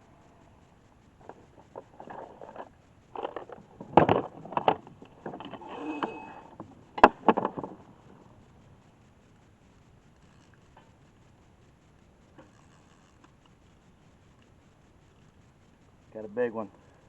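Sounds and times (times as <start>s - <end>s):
gear knocking and rattling in boat: 1.2s - 8.0s.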